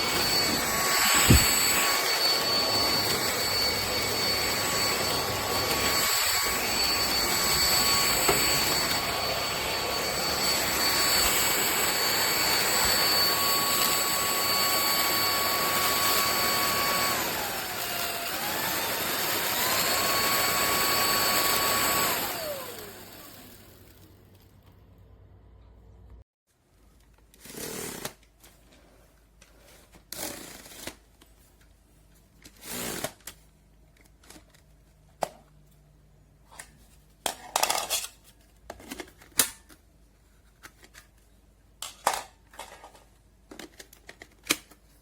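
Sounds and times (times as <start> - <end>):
vacuum cleaner motor whining: 0.0 - 24.2.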